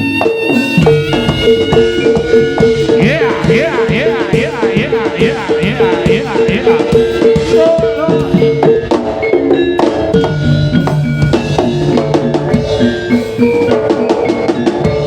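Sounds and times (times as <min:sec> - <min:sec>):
rapid drum strokes: 0:00.0 - 0:09.2
sustained melodic notes: 0:00.0 - 0:15.0.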